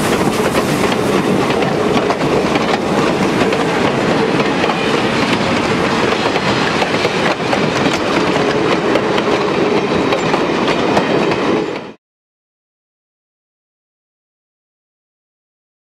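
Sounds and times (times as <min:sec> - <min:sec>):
train wheels clicking over rail joints: 0:00.0 - 0:12.0.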